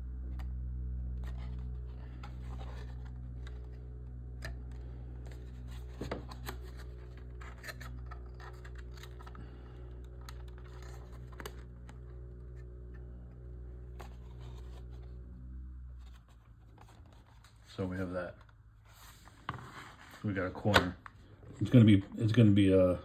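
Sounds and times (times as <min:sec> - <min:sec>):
steady low hum: 0:00.0 - 0:23.0
plastic parts clicking and scraping: 0:04.4 - 0:12.1.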